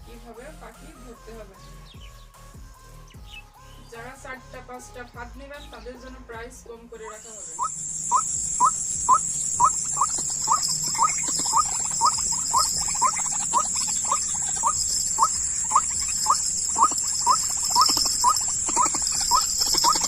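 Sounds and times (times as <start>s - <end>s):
bird calling rising note: 7.1s - 20.0s
steady high-pitched drone: 7.1s - 20.0s.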